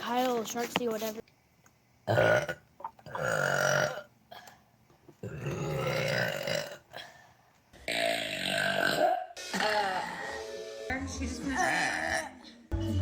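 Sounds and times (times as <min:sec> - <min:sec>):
girls burping: 0:02.1 - 0:04.6, 0:05.2 - 0:07.1, 0:07.9 - 0:10.4, 0:11.5 - 0:12.4.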